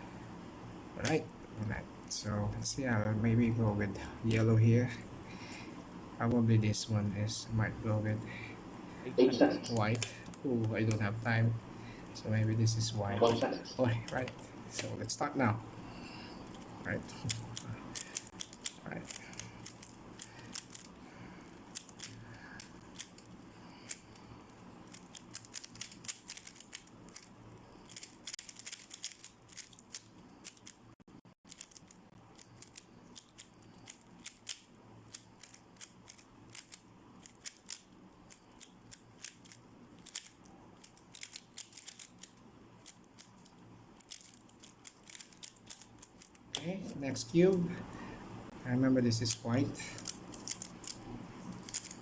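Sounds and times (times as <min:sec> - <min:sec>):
speed cube layers clicking: 0:16.4 - 0:24.2, 0:24.9 - 0:30.8, 0:31.5 - 0:46.6, 0:49.2 - 0:52.0.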